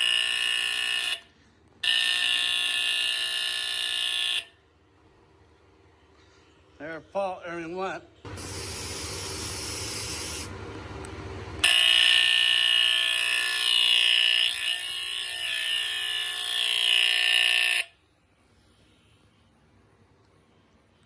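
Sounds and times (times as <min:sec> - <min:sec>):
aerosol spray hissing: 0:08.3 - 0:10.5.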